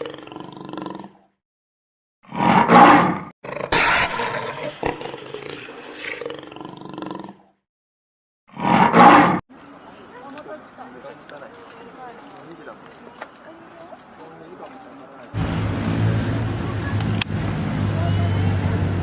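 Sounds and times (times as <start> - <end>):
lion roaring: 0.0 - 1.2, 2.3 - 7.5.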